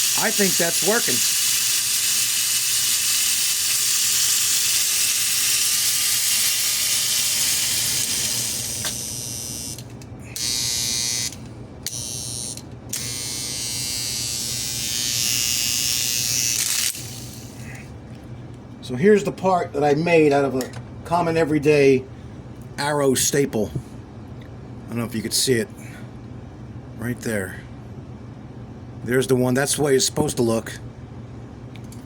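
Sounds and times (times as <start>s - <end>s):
electric motor buzzing whir: 0.0s - 17.6s.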